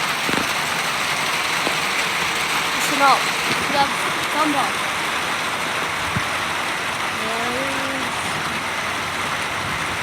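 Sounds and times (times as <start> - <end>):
heavy rain: 0.0 - 10.0.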